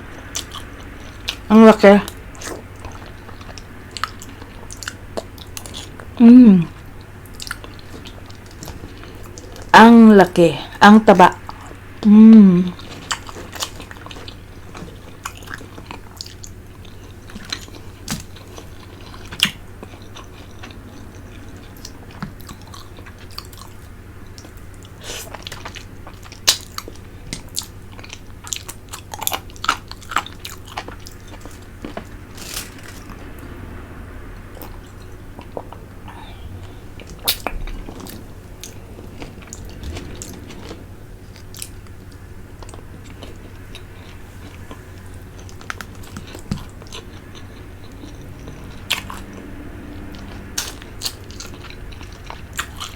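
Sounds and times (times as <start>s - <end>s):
faint low hum: 0.0s - 52.9s
lip smacks and chewing: 41.4s - 52.9s.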